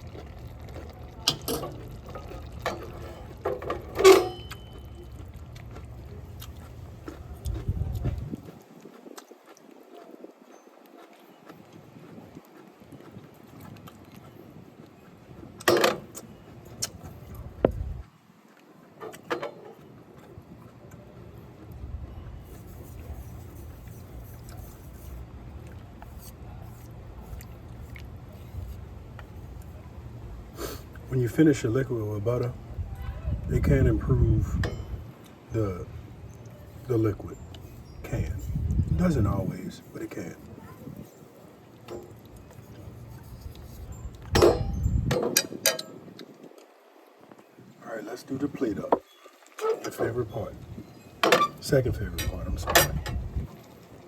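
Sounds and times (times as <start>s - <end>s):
sauce simmering in a skillet: 0.0s - 3.4s.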